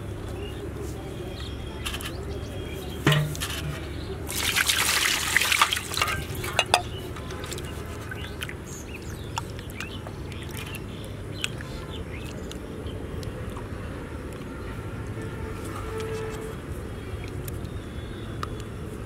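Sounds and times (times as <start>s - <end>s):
liquid pouring: 3.1s - 7.0s.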